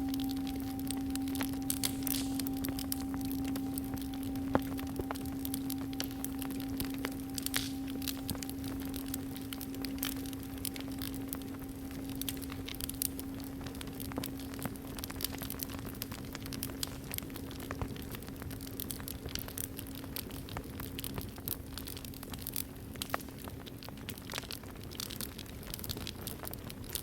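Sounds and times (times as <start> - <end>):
singing bowl ringing: 0.0 - 15.6
wood fire crackling: 0.0 - 27.0.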